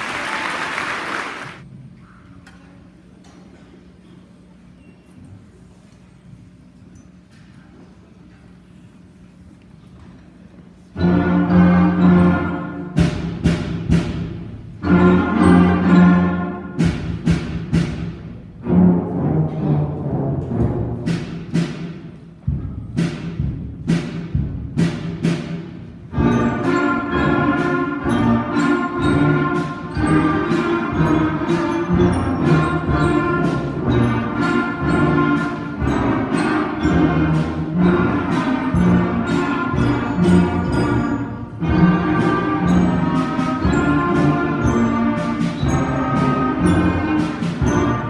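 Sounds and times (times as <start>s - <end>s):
concert band playing: 11.0s - 48.0s
drum strikes: 11.0s - 48.0s.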